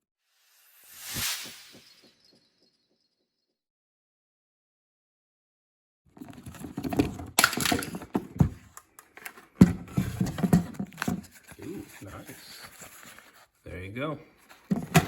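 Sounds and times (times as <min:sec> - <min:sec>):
plastic trim clicks and rustling: 0:06.3 - 0:09.7.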